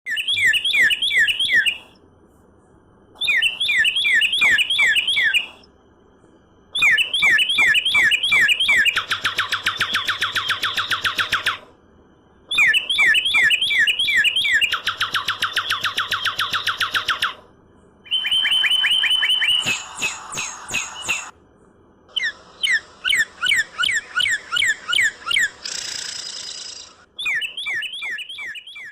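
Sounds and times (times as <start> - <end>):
bird song whistles and trills: 0.1 - 2.0, 3.2 - 5.7, 6.7 - 11.7, 12.5 - 21.3, 22.1 - 28.9.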